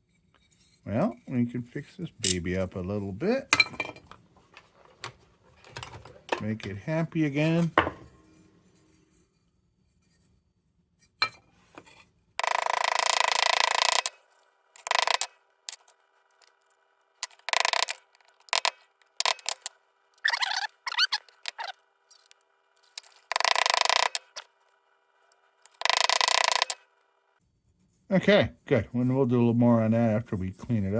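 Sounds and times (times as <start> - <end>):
squeaky metal sound: 20.2 - 22.3.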